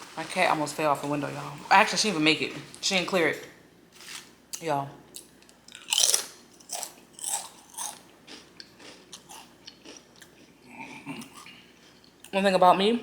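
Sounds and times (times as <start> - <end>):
potato chips crunching: 4.0 - 12.4.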